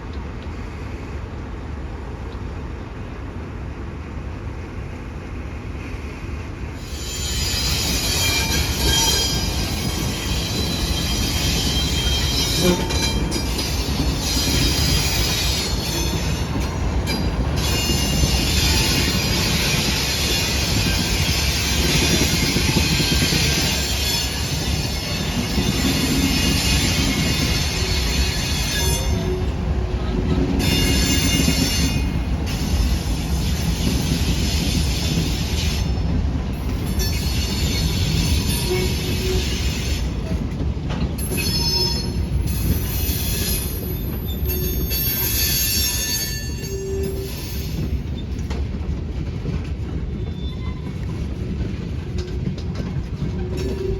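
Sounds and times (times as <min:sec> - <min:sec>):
freight train wheels on rails: 0:00.0 - 0:53.9
high-pitched wheel squeal: 0:06.8 - 0:16.4, 0:17.1 - 0:29.5, 0:41.2 - 0:47.9.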